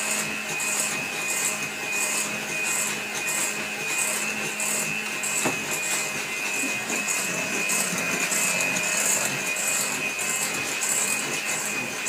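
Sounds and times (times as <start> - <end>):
electric mixer running: 0.0 - 12.0.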